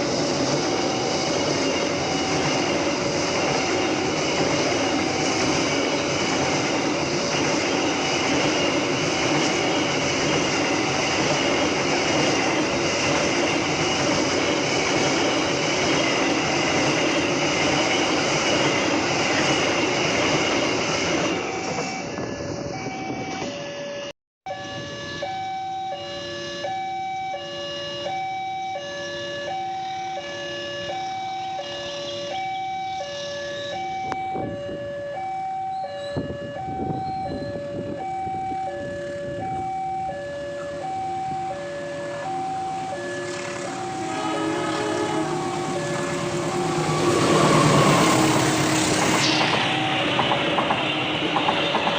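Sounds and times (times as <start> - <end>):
train passing: 0.0 - 24.1, 36.4 - 51.9
level crossing alarm: 0.6 - 19.2, 21.3 - 51.9.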